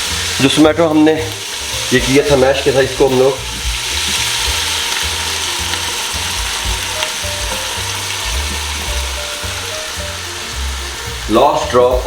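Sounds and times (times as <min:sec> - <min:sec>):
food sizzling in hot oil: 0:00.0 - 0:12.0.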